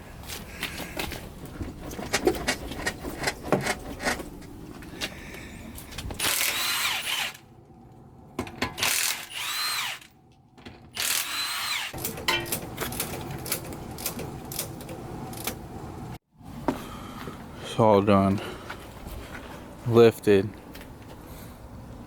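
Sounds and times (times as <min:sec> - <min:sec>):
power drill whining: 0:06.2 - 0:07.4, 0:08.8 - 0:10.1, 0:10.9 - 0:12.0.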